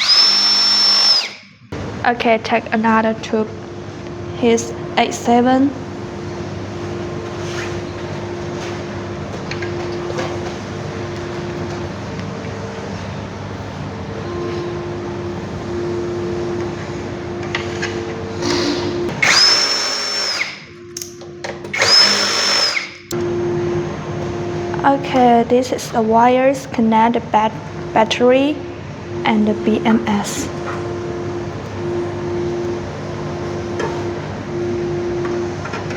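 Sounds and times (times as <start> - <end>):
electric screwdriver whirring: 0.0 - 1.4, 18.4 - 20.6, 21.7 - 23.2
steady low hum: 1.6 - 19.7, 23.1 - 35.9.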